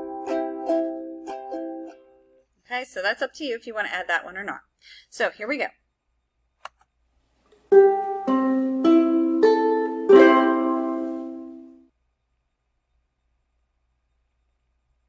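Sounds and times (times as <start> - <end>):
ukulele strumming: 0.0 - 2.4, 7.7 - 11.8.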